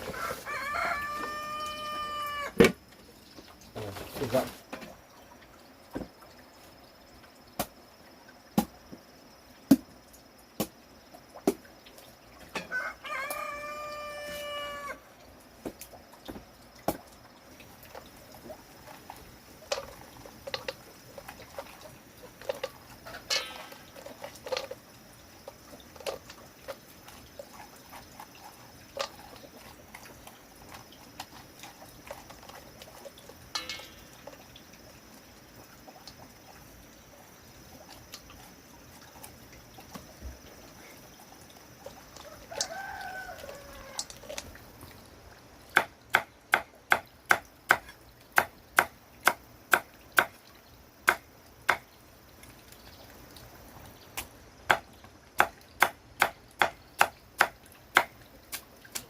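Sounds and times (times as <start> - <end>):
rooster crowing: 0.0 - 2.6, 12.6 - 15.0, 42.2 - 44.1.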